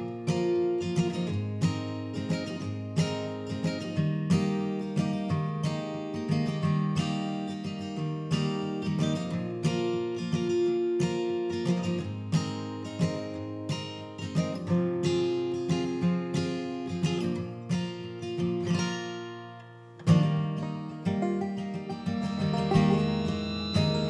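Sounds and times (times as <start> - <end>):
acoustic guitar playing: 0.0 - 24.0.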